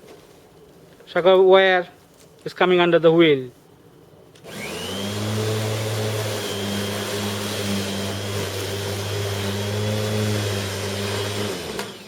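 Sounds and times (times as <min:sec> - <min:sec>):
electric lawnmower running: 0:04.4 - 0:12.0.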